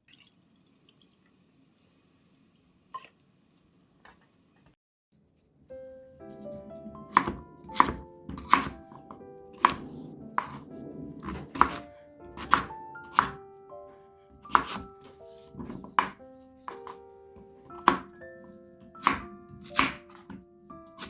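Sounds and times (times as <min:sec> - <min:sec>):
background music: 0:05.7 - 0:21.0
knife chopping on cutting board: 0:06.4 - 0:13.4, 0:14.3 - 0:21.0.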